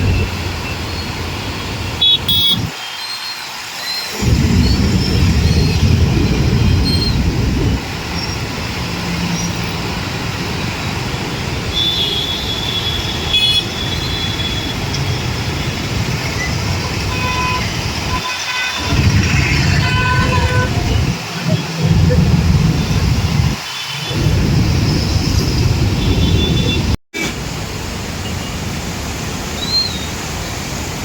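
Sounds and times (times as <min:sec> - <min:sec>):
road traffic: 0:00.0 - 0:31.0
vehicle horn toots: 0:17.1 - 0:21.2.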